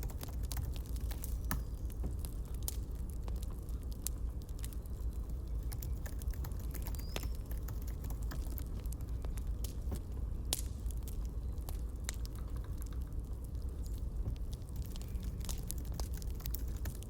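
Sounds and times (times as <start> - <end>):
campfire crackling: 0.0 - 17.0.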